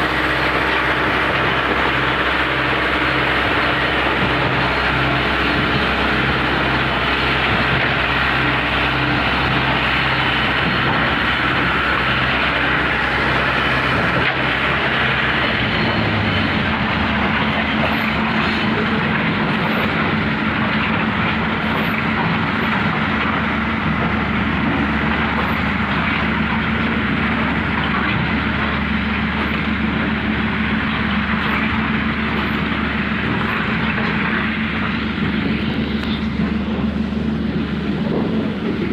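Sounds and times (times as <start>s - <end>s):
heavy machinery engine running: 0.0s - 38.9s.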